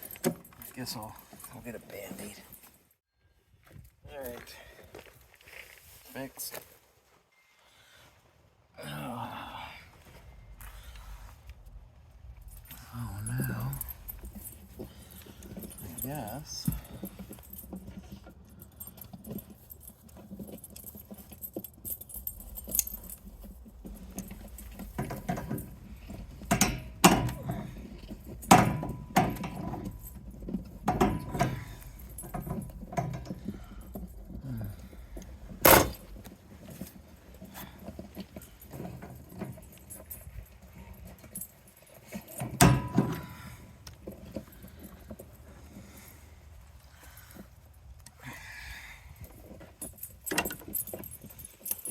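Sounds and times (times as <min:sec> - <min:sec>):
metal parts clanking: 0:00.0 - 0:02.8, 0:12.3 - 0:45.2, 0:49.7 - 0:51.9.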